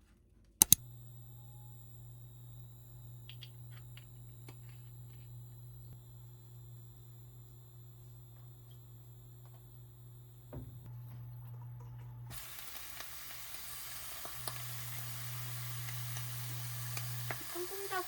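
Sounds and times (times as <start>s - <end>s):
low steady hum: 0.7s - 12.4s
food sizzling in a frying pan: 1.5s - 18.0s.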